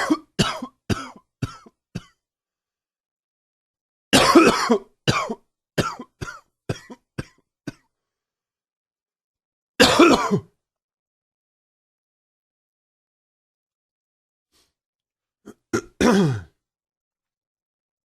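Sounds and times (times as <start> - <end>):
man coughing: 0.0 - 2.2, 4.2 - 7.9, 9.8 - 10.5, 15.5 - 16.6.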